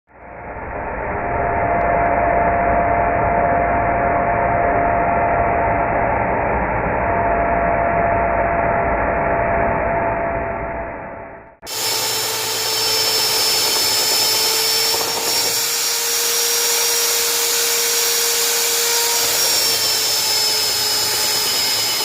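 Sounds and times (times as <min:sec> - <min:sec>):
metal lathe whining: 0:11.7 - 0:22.0.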